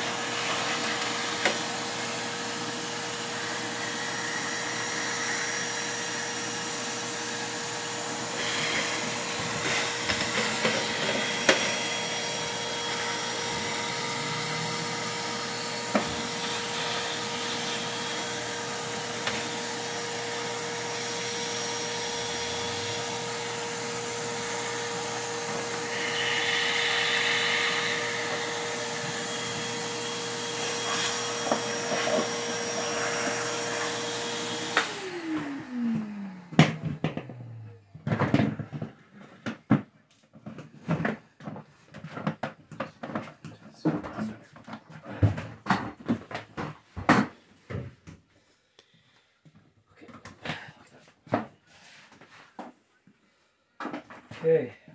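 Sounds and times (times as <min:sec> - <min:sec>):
vacuum cleaner running: 0:00.0 - 0:39.8.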